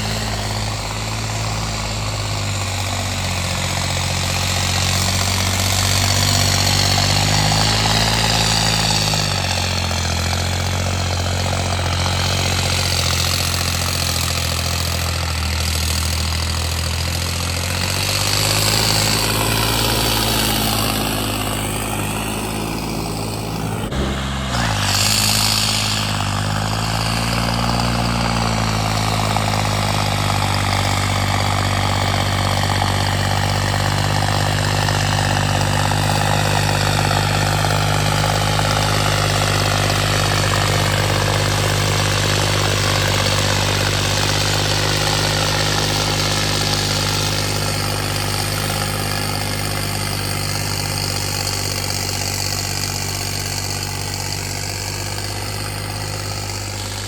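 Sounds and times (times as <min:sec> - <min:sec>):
tractor engine running: 0:00.0 - 0:57.0
high whine dropping in pitch: 0:18.3 - 0:33.8.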